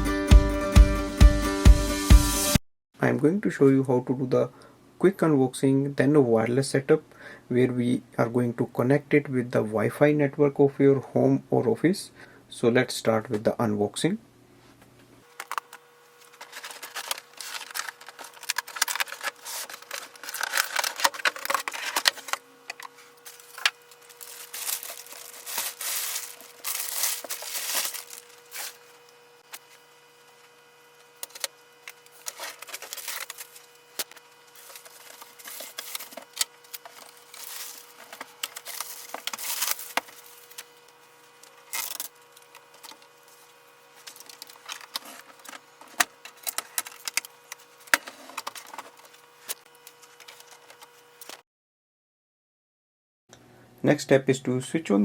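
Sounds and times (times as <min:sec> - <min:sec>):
cardboard and packing tearing: 0:16.2 - 0:29.7, 0:32.1 - 0:40.7.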